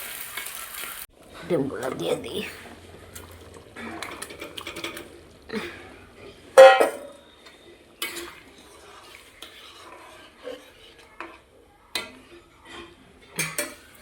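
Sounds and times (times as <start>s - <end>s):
metal spoon stirring in pot: 1.2s - 14.0s
loud ringing clang: 6.6s - 7.2s.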